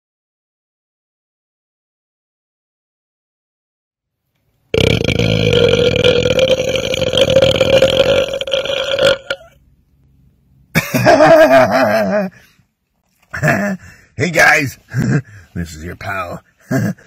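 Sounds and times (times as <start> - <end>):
man belching: 4.7 - 9.6.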